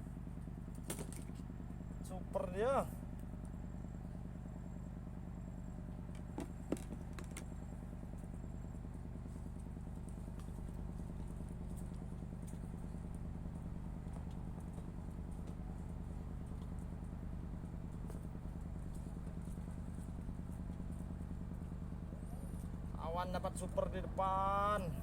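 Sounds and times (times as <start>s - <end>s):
small engine running: 0.0s - 25.0s
short knocks: 6.2s - 7.4s.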